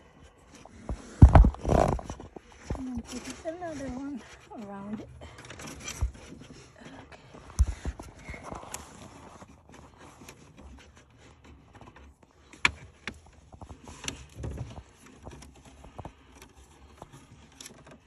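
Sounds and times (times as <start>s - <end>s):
clicks and taps of handling wires: 7.4s - 18.0s.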